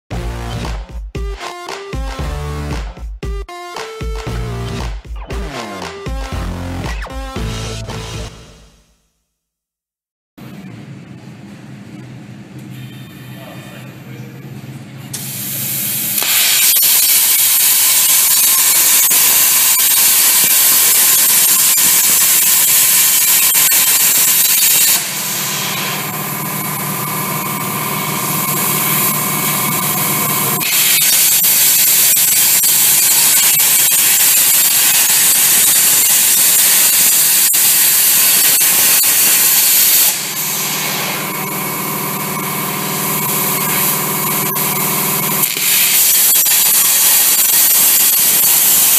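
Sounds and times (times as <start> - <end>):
plasma torch hissing: 15.1 - 26.2, 30.6 - 41.6, 45.4 - 48.9
steady hum: 25.0 - 31.5, 40.0 - 46.0.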